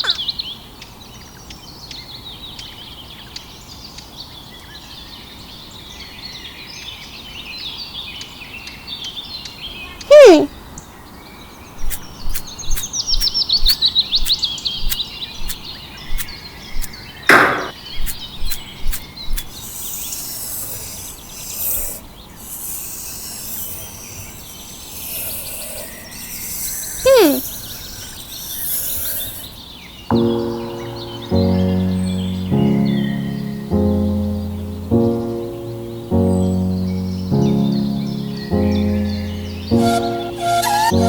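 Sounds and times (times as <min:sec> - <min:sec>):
birds chirping: 0:11.4 - 0:41.0
downward-gliding whistle-like call: 0:39.7 - 0:41.0.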